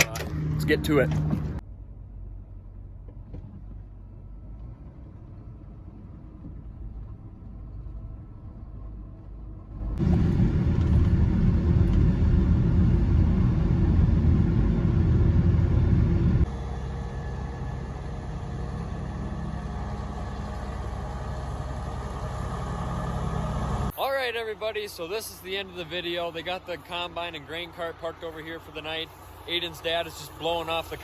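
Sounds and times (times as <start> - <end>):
truck engine low rumble: 0.0 - 31.0
truck moving loud rumble: 9.7 - 23.9, 24.9 - 31.0.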